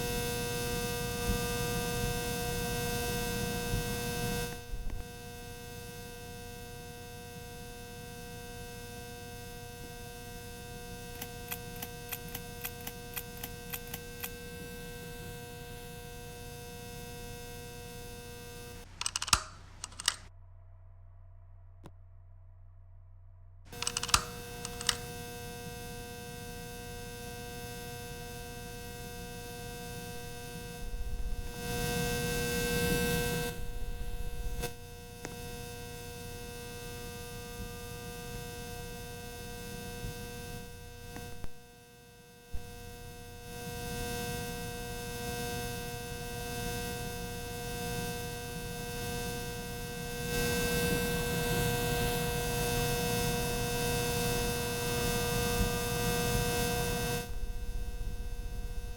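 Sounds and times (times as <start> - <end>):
ceiling fan motor humming: 0.0 - 20.3, 23.7 - 41.8, 48.2 - 58.9
clicks: 11.1 - 14.4, 18.8 - 20.3, 23.8 - 25.1.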